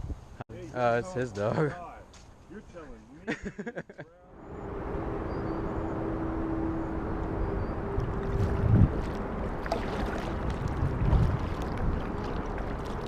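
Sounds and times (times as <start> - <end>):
wind buffeting microphone: 4.6 - 13.0
water lapping: 8.1 - 13.0
kayak paddle splashing water: 8.2 - 13.0.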